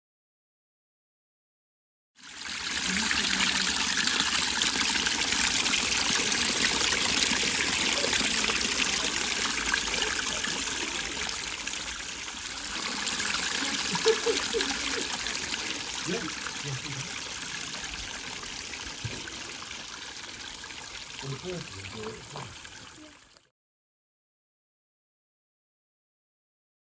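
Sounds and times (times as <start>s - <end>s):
water running over pond waterfall: 2.2s - 23.5s.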